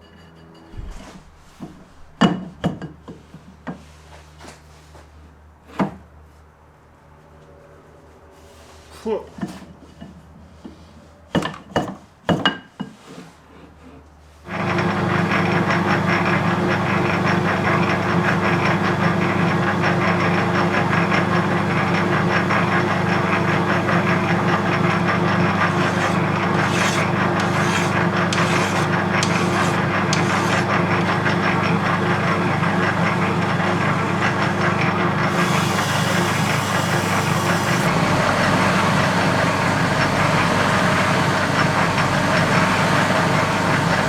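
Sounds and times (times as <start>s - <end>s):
lathe motor hum: 14.5s - 44.0s
tool scraping metal: 24.8s - 31.6s, 35.2s - 37.9s.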